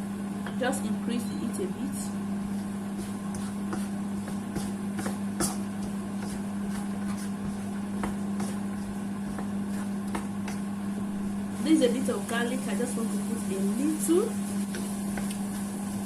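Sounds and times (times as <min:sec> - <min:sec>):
steady mechanical hum: 0:00.0 - 0:16.0
vegetables frying in a wok: 0:09.1 - 0:16.0.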